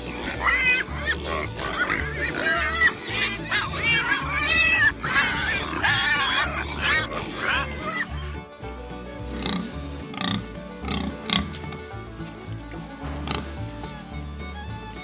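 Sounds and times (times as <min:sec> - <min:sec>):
pigs squealing: 0:00.0 - 0:08.5, 0:09.3 - 0:11.4
background music: 0:00.0 - 0:15.0.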